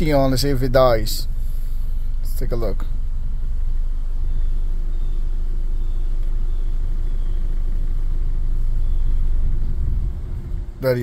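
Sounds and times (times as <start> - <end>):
car engine idling rough: 0.0 - 11.0
steady hum: 0.0 - 11.0.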